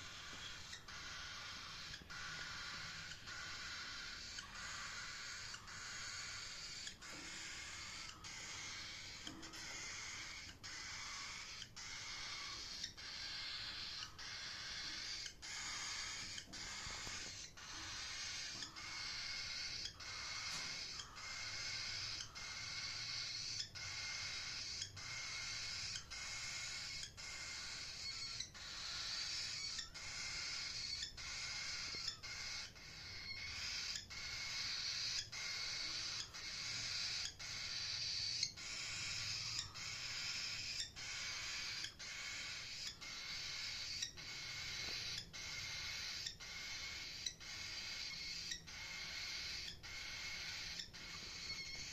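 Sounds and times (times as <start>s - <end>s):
cockatiel chirping: 0.0s - 51.9s.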